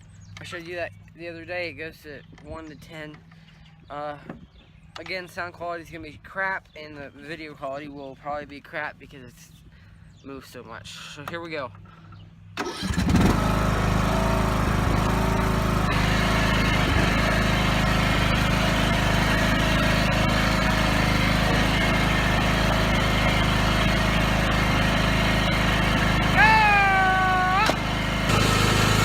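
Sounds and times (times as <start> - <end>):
riding lawn mower engine: 11.8 - 29.0.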